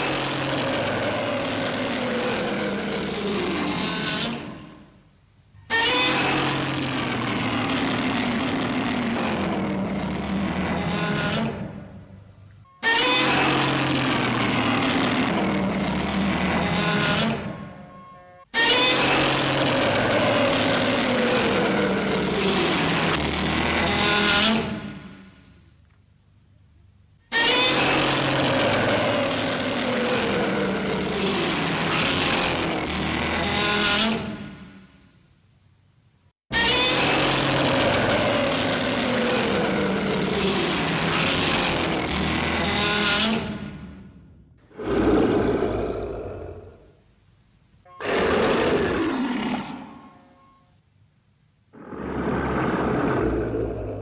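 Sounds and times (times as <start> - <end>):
harsh rasping monster roar: 0.0 - 4.8, 6.1 - 11.6, 13.2 - 17.4, 18.7 - 25.0, 27.4 - 34.3, 36.6 - 43.6, 44.7 - 46.8, 48.0 - 49.9, 51.8 - 54.0.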